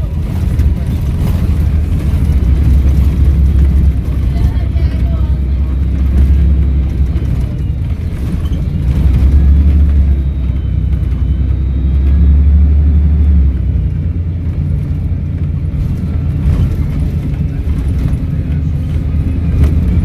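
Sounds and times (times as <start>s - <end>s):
bus diesel engine droning: 0.0s - 20.0s
faint turbo whistle: 9.0s - 13.5s.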